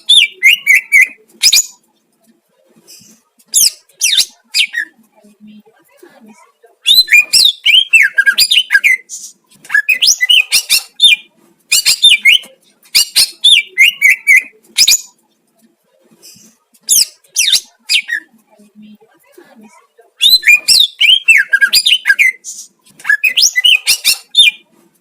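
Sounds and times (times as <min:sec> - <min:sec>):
bird singing whistled notes: 0:23.1 - 0:24.6.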